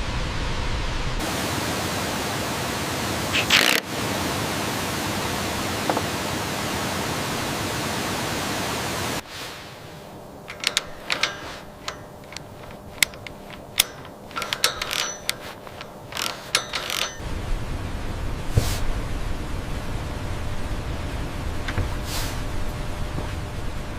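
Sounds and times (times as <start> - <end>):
waterfall rushing: 1.2 - 9.2
sharp clicks and light knocks: 10.4 - 17.3.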